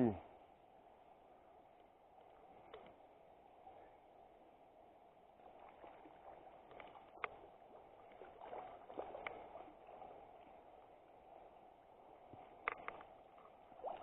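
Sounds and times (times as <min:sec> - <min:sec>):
river water flowing: 0:00.0 - 0:14.0
small sharp clicks: 0:12.6 - 0:13.1.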